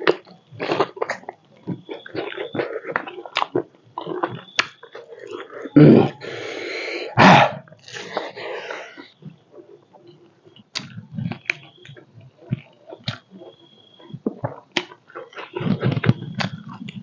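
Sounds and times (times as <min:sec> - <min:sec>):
lip smacks: 0:00.0 - 0:06.7, 0:07.7 - 0:17.0
wet chewing: 0:00.0 - 0:17.0
sharp mouth clicks: 0:10.1 - 0:17.0.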